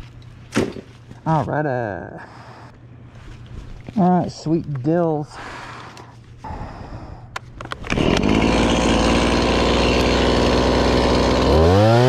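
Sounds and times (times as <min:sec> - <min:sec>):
chainsaw running: 0:07.8 - 0:12.0.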